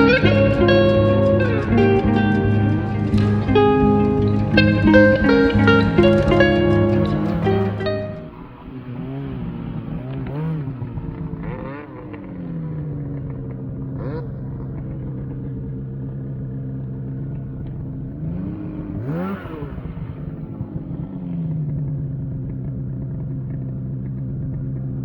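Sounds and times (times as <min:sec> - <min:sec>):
snowmobile engine revving: 0:00.0 - 0:15.4, 0:18.0 - 0:21.6.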